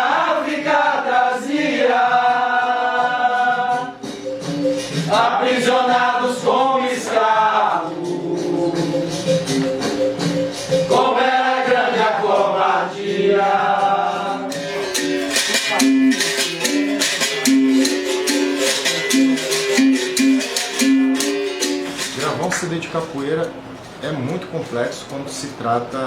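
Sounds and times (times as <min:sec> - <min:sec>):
person singing: 0:00.0 - 0:22.4
berimbau twanging notes: 0:14.5 - 0:22.5
shaking rattle: 0:14.6 - 0:23.2.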